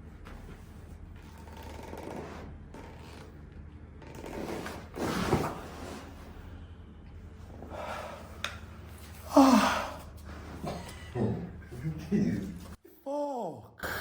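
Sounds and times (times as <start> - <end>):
person crying out: 9.3 - 10.0.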